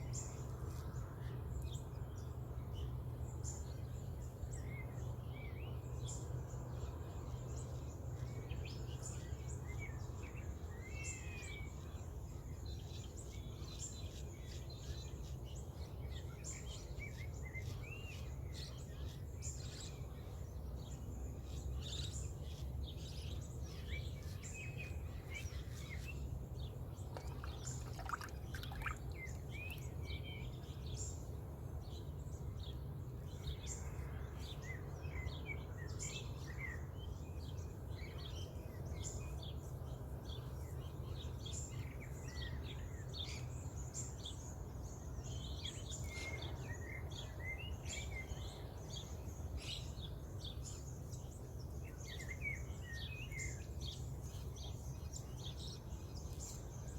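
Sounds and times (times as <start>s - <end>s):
birds chirping and trilling: 21.4s - 31.2s.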